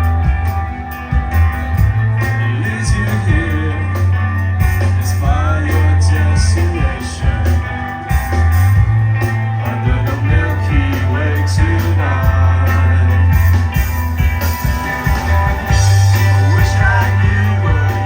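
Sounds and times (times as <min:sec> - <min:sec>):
live rock band playing: 0:00.0 - 0:18.0
sliding electric guitar lines: 0:00.0 - 0:18.0.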